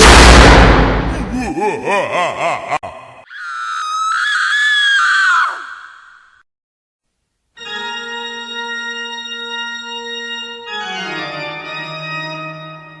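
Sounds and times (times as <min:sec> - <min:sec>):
person screaming: 0:01.2 - 0:06.2
sustained organ chord: 0:07.6 - 0:13.0.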